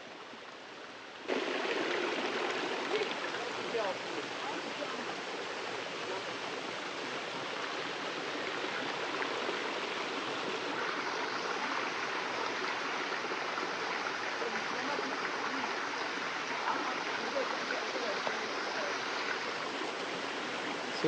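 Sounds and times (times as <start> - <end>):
small waterfall rushing: 0.0 - 21.0.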